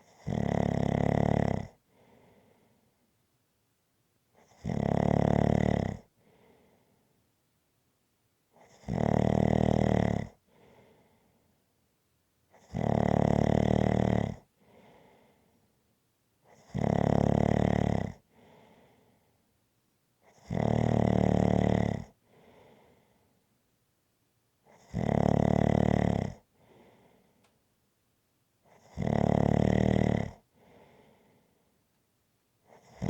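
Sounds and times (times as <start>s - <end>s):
person snoring: 0.1s - 1.8s, 4.4s - 6.1s, 8.7s - 10.4s, 12.6s - 14.4s, 16.6s - 18.2s, 20.3s - 22.1s, 24.7s - 26.4s, 28.7s - 30.4s.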